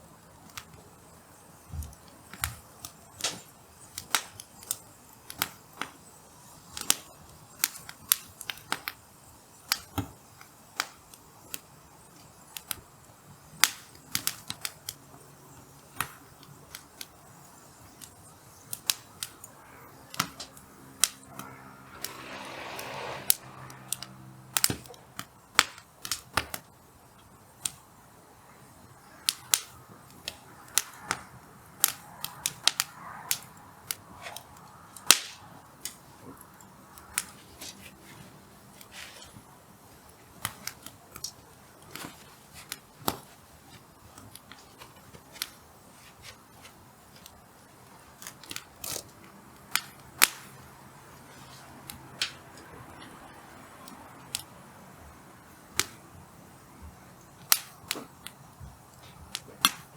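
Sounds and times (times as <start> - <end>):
campfire logs crackling and popping: 0.1 - 59.9
brief rushing sound: 21.4 - 24.5.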